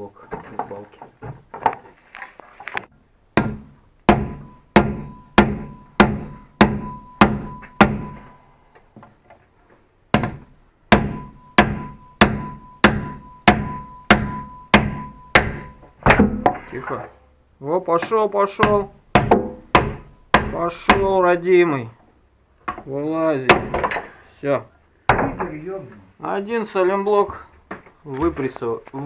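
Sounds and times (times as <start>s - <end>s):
hammer striking metal: 3.4s - 8.4s, 10.1s - 16.6s, 18.6s - 21.3s.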